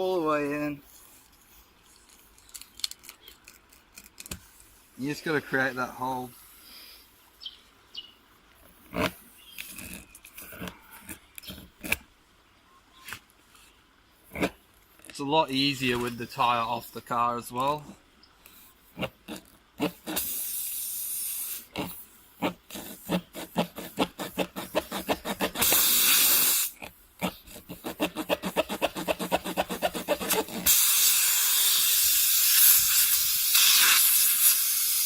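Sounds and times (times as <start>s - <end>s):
air hissing: 20.0s - 22.1s, 25.5s - 26.8s, 28.4s - 35.0s.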